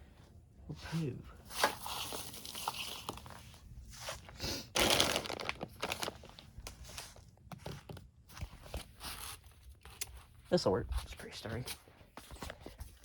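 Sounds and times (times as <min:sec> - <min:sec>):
rustling scrape: 0:01.4 - 0:04.3
rummaging through small objects: 0:04.8 - 0:06.4.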